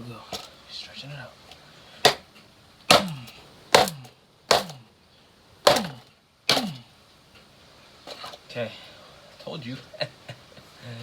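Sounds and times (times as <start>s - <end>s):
hard knocks on isolator: 2.9s - 4.8s, 5.7s - 6.8s.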